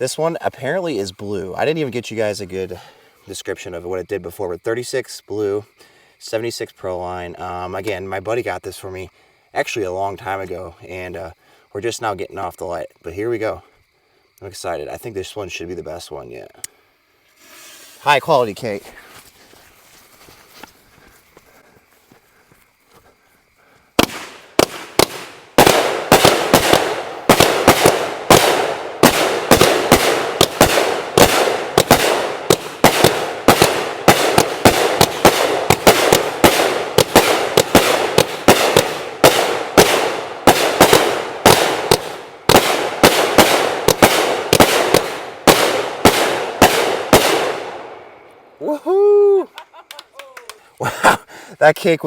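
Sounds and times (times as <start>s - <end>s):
fireworks shots crackling: 23.9s - 48.4s.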